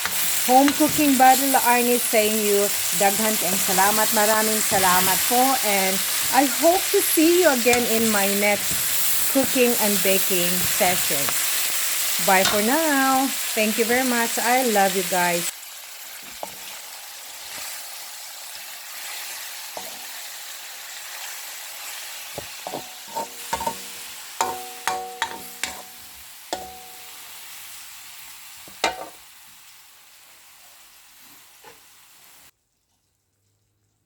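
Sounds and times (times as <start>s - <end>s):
food sizzling in a pan: 0.0s - 33.8s
metal utensil clinking on pan: 22.6s - 27.1s.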